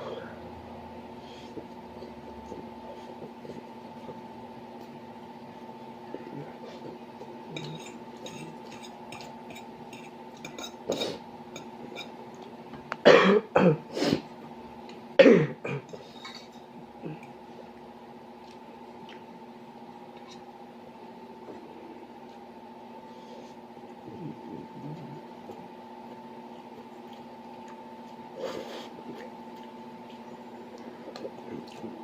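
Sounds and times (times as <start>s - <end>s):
person coughing: 13.0s - 14.2s, 15.2s - 16.0s
mouth clicks and eating smacks: 18.4s - 19.3s, 26.6s - 28.2s.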